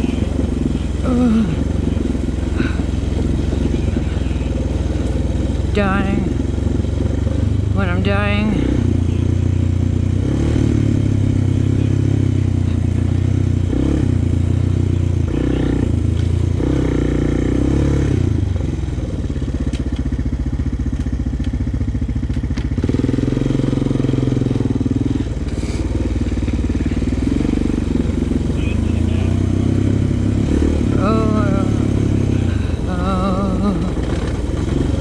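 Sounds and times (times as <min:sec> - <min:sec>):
atv engine running: 0:00.0 - 0:35.0.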